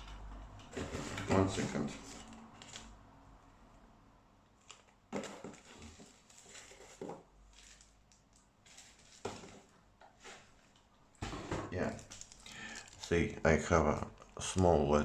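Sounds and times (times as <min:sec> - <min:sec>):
small objects knocking and rustling: 0:04.6 - 0:13.2.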